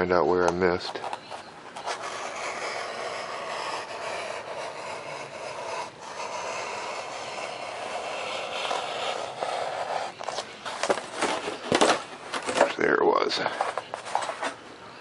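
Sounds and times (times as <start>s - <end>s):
blade scraping through foam board: 1.8s - 12.7s.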